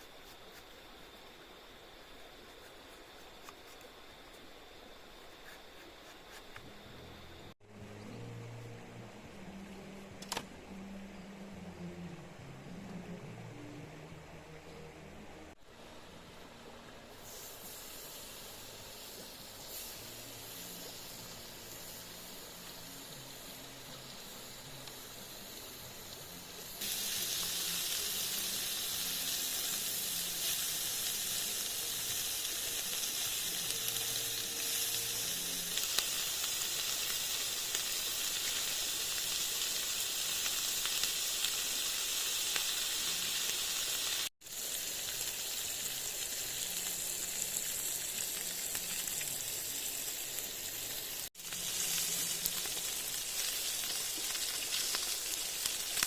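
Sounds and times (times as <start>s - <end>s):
food sizzling in a pan: 17.1s - 56.0s.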